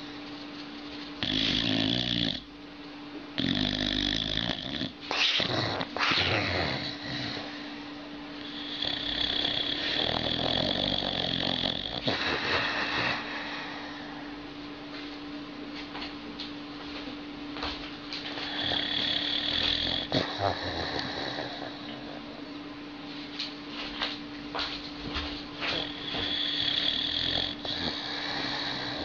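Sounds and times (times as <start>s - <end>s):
dog snoring and grunting: 1.2s - 2.5s, 3.3s - 14.3s, 18.2s - 22.6s, 25.5s - 29.0s.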